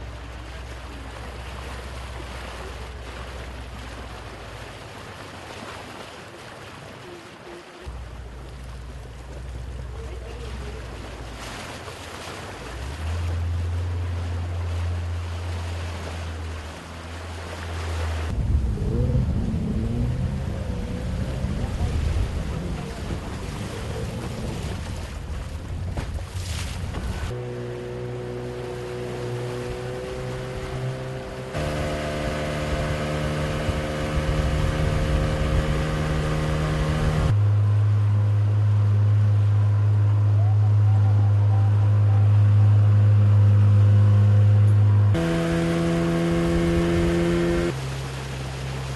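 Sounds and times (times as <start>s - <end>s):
engine humming: 7.8s - 48.9s
wind buffeting microphone: 18.2s - 27.4s, 29.6s - 37.4s.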